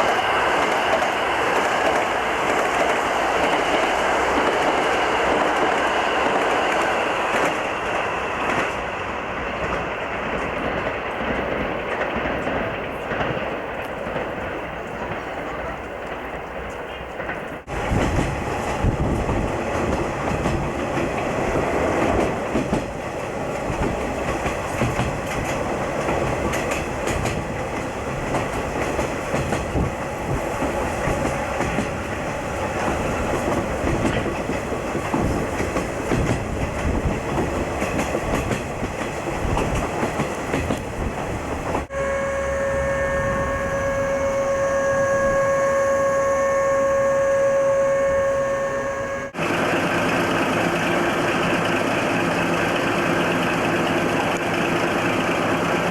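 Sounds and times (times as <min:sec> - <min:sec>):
train clickety-clack on rails: 0:00.0 - 0:41.9, 0:49.4 - 0:55.9
steady multi-pitch whine: 0:41.9 - 0:51.0.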